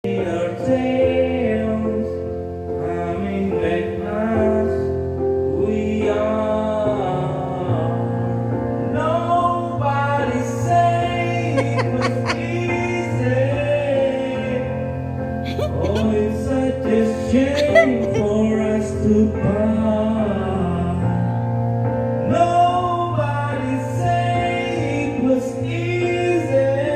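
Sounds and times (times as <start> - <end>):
singing voice: 9.0 - 14.8, 15.4 - 21.3, 22.3 - 26.9.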